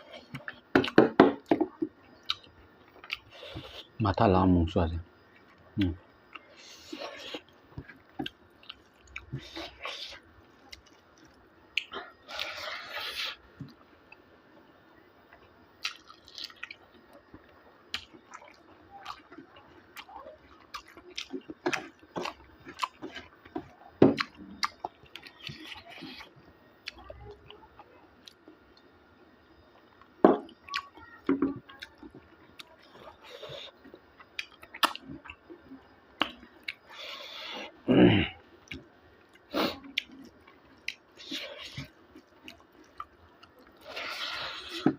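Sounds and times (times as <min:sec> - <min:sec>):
person chewing: 0:02.2 - 0:04.0, 0:05.3 - 0:13.7, 0:15.3 - 0:28.5, 0:30.5 - 0:44.9.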